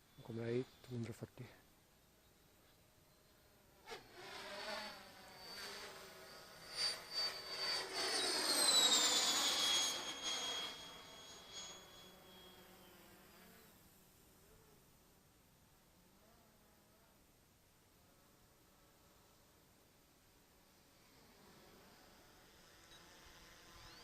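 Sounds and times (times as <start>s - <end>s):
model jet passing with high whine: 3.0s - 14.1s, 20.6s - 24.0s.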